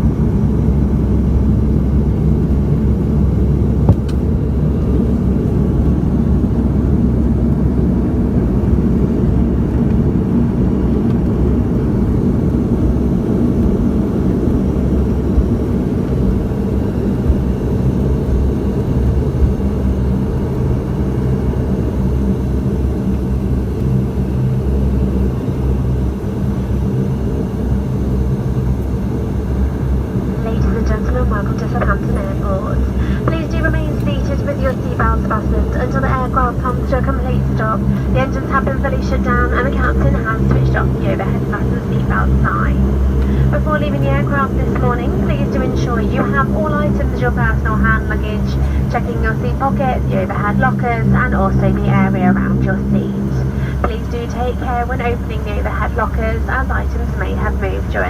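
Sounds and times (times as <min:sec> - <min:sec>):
turboprop engine drone: 0:00.0 - 0:58.0.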